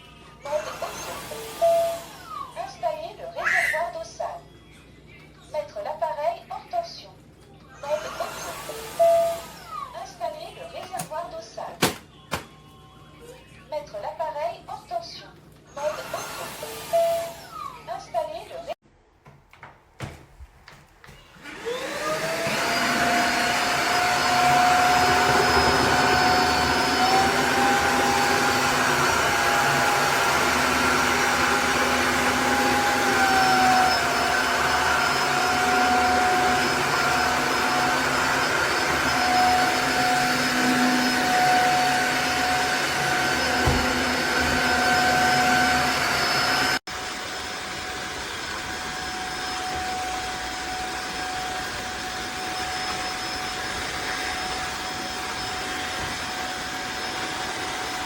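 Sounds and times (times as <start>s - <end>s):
vacuum mop motor whine: 0.0s - 2.6s, 7.8s - 10.0s, 15.8s - 17.8s, 21.0s - 58.0s.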